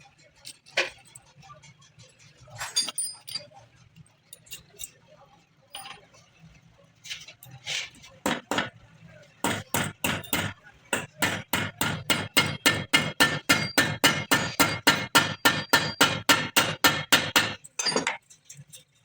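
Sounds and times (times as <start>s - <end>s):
hammer striking metal: 8.3s - 8.8s, 9.4s - 18.2s.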